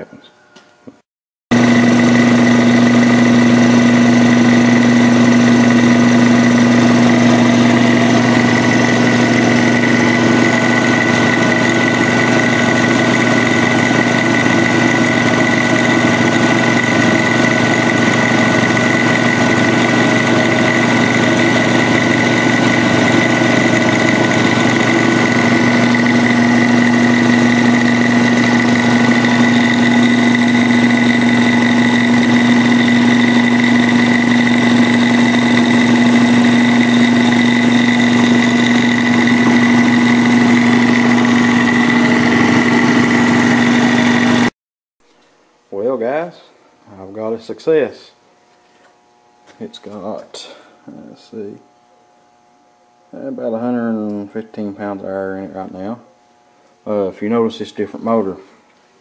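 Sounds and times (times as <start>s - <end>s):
air compressor running: 1.5s - 44.5s.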